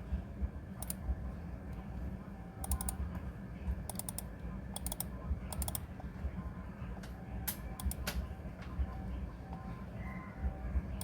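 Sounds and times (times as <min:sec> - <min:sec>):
low steady hum: 0:00.0 - 0:11.0
keyboard keys clicking: 0:02.6 - 0:03.0, 0:07.8 - 0:08.2.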